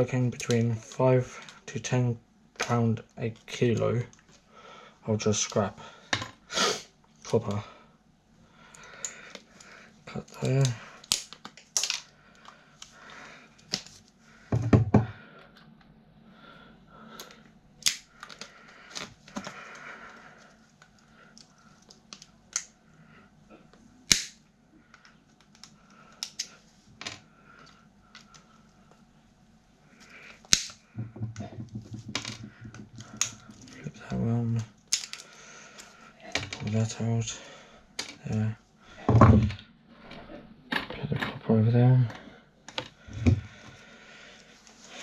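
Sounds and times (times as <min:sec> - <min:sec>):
hand tools snipping and clicking: 0:24.1 - 0:24.4, 0:30.4 - 0:30.8.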